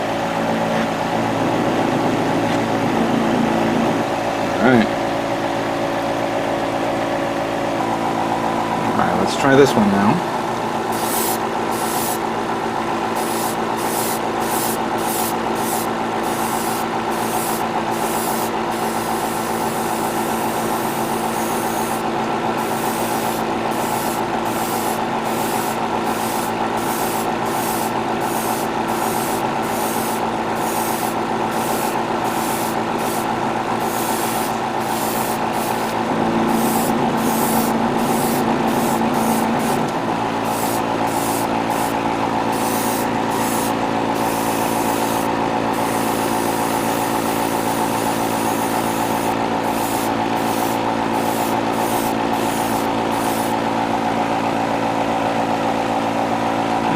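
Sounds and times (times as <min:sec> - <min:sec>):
air compressor humming: 0:00.0 - 0:56.9
airbrush spraying hiss: 0:10.9 - 0:12.2, 0:13.1 - 0:53.6.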